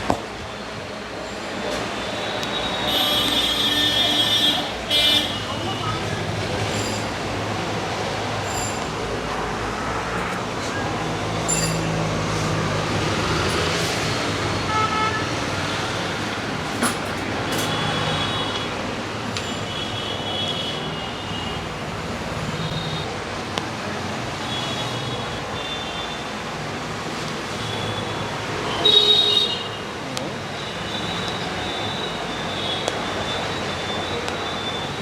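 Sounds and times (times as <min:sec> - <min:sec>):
street traffic noise: 0:00.0 - 0:35.0
vehicle horns tooting: 0:01.8 - 0:06.3, 0:14.4 - 0:21.9, 0:22.6 - 0:23.2, 0:27.6 - 0:35.0.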